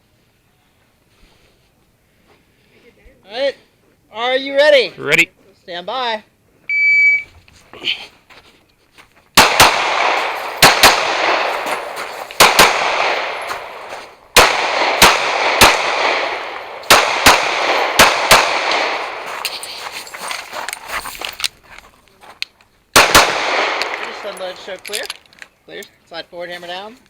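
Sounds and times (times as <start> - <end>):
pistol shots echoing: 9.4 - 19.4, 22.9 - 24.8.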